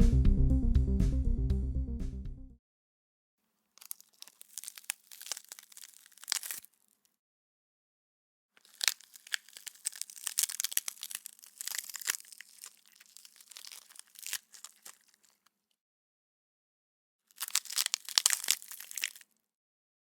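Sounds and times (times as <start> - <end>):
wet crunching and crackling: 3.8 - 7.0, 8.6 - 15.5, 17.3 - 19.4.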